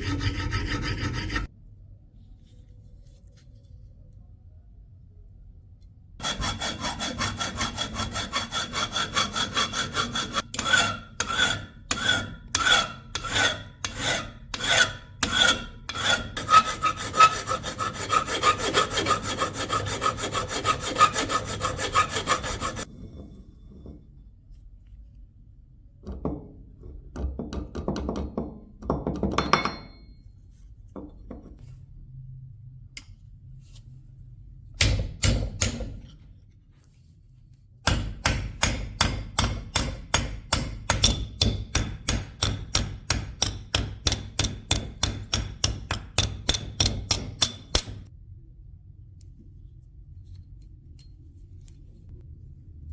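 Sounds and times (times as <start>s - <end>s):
rubbing strokes on steel blade: 0.0s - 1.5s, 6.2s - 22.9s
short scrapes: 0.0s - 1.5s.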